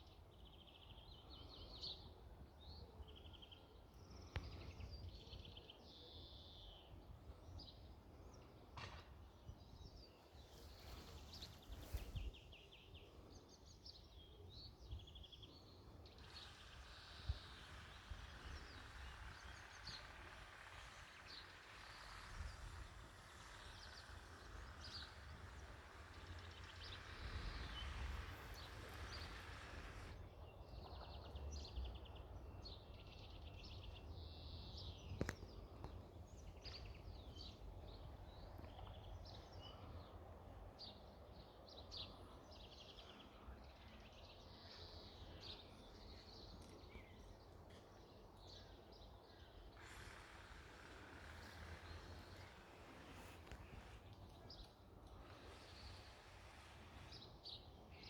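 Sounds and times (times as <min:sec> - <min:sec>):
steady hiss: 0:16.3 - 0:30.2
low wind rumble: 0:16.5 - 0:32.1.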